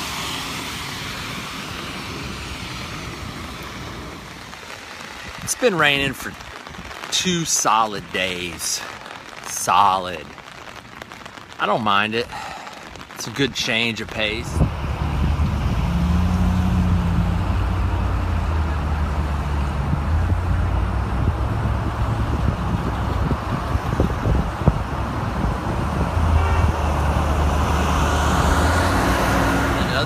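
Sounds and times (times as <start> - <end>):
road noise: 0.0 - 30.0
car engine rumble: 12.2 - 30.0.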